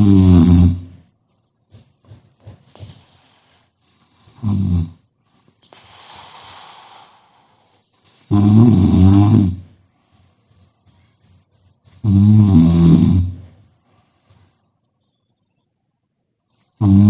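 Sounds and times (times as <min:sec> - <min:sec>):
person snoring: 0:00.0 - 0:01.0, 0:04.1 - 0:05.0, 0:05.7 - 0:09.8, 0:12.0 - 0:13.5, 0:16.8 - 0:17.0
breathy breath: 0:02.6 - 0:04.4, 0:05.2 - 0:08.4.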